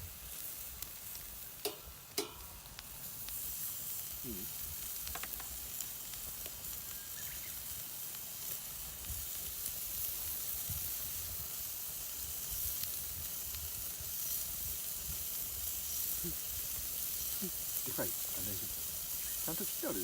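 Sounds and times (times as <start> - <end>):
meat sizzling on a grill: 0.0 - 20.0.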